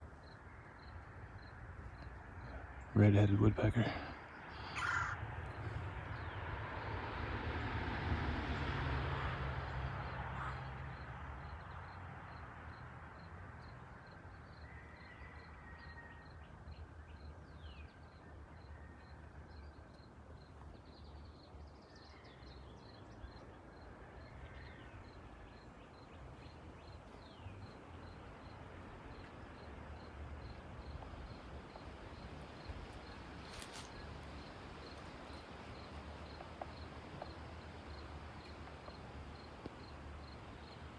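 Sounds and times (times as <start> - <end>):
harsh bird calls: 2.5 - 6.4.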